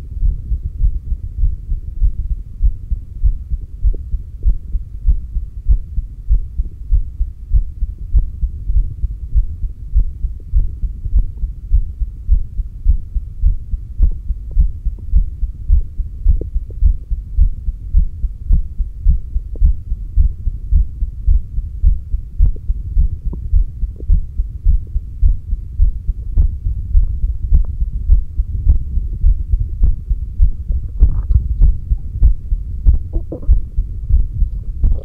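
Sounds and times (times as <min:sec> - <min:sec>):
heartbeat thuds: 0:00.0 - 0:35.0.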